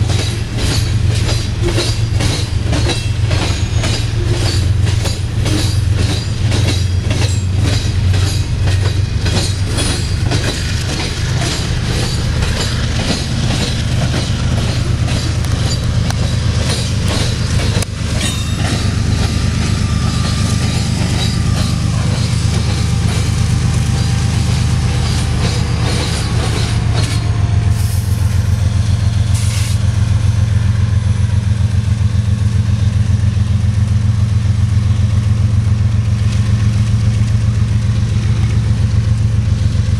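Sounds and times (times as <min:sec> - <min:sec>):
train wheels clicking over track joints: 0:00.0 - 0:29.8
heavy low rumble of train: 0:00.0 - 0:39.9.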